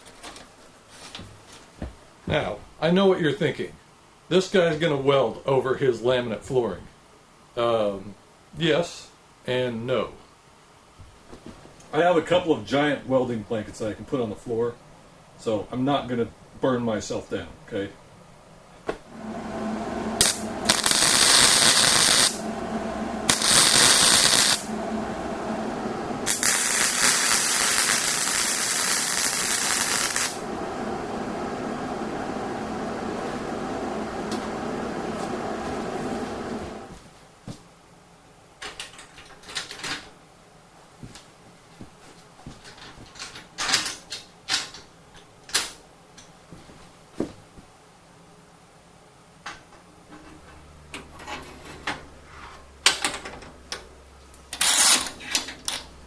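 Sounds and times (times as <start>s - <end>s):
steady low hum: 17.4s - 37.1s
welding arc crackling: 19.1s - 37.0s, 54.6s - 56.0s.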